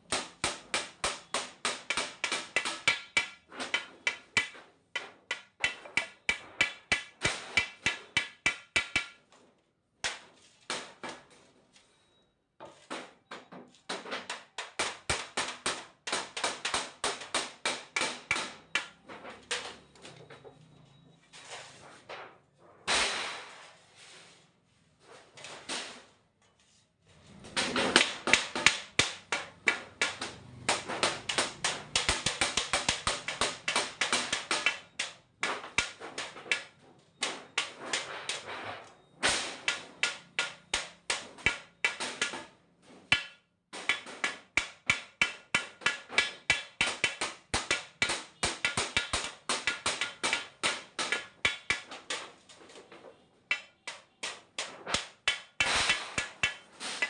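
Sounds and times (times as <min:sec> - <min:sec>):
rapid hammer blows: 0:27.6 - 0:38.5, 0:53.5 - 0:57.0.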